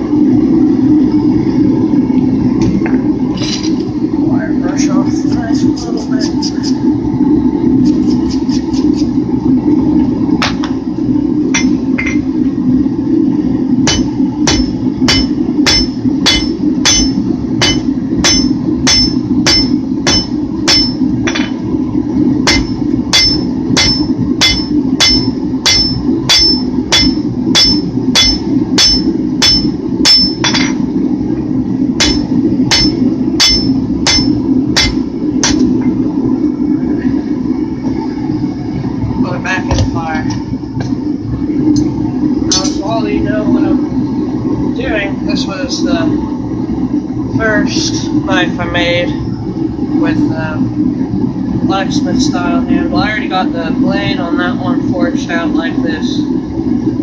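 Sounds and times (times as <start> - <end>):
forge roaring: 0.0 - 5.8, 9.1 - 57.0
hammer striking steel on anvil: 13.9 - 21.6, 22.5 - 30.8, 32.0 - 35.7.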